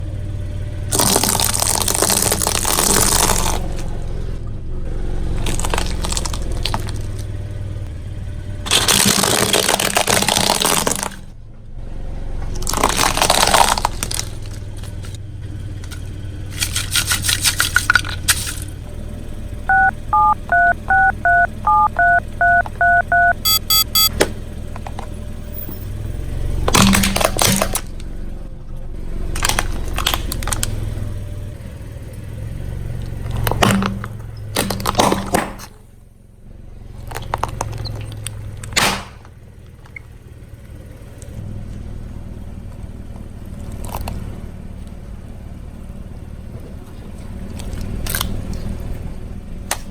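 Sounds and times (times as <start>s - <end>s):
low engine hum: 0.0s - 49.9s
touch-tone phone beeps: 19.7s - 24.1s.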